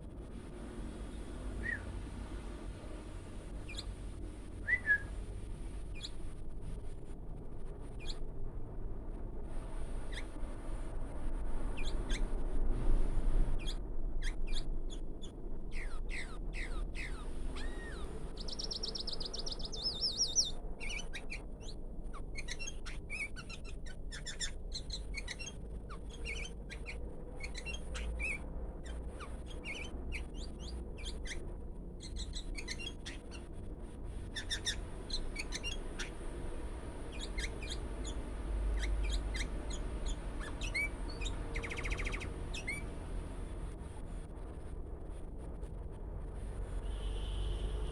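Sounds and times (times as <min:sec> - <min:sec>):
bird chirping: 0:01.6 - 0:01.9, 0:03.6 - 0:04.0, 0:04.6 - 0:05.1, 0:05.9 - 0:06.2, 0:08.0 - 0:08.2, 0:10.1 - 0:10.4, 0:11.7 - 0:12.3, 0:13.6 - 0:33.5, 0:34.2 - 0:36.2, 0:37.0 - 0:42.9.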